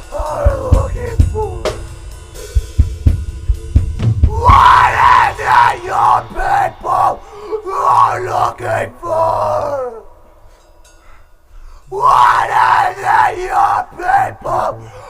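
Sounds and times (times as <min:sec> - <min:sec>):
harsh screamed vocals: 0:00.0 - 0:01.9, 0:04.2 - 0:10.4, 0:11.9 - 0:15.0
pounding kick and snare drums: 0:00.0 - 0:05.8
metal band playing: 0:00.0 - 0:09.6.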